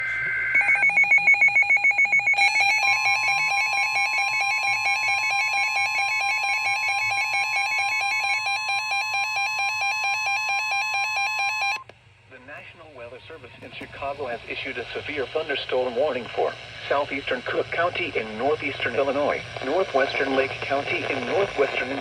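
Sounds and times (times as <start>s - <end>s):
rapid electronic beeping: 0.0s - 11.8s
steady warning tone: 0.0s - 11.9s.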